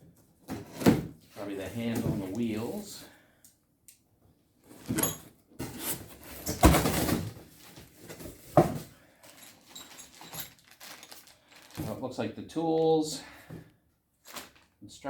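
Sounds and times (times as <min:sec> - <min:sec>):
cardboard and plastic rustling: 0:04.7 - 0:12.2, 0:13.5 - 0:14.8.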